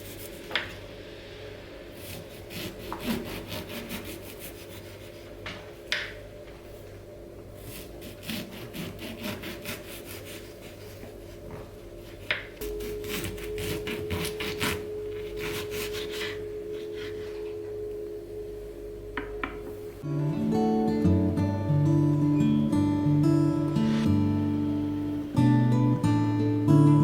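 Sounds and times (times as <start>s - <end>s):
soft acoustic guitar music: 20.0s - 27.0s.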